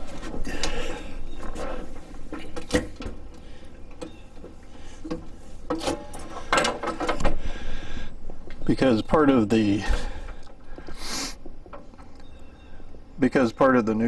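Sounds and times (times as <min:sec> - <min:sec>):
clicks knocks and scrapes on fittings: 0:02.3 - 0:07.4.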